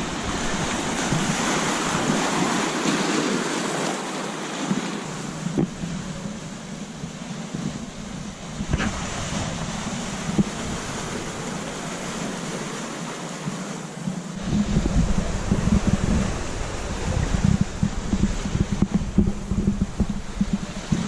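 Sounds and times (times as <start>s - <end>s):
wind buffeting the microphone: 0.0s - 3.8s, 4.5s - 21.0s
waves washing on a beach: 0.0s - 21.0s.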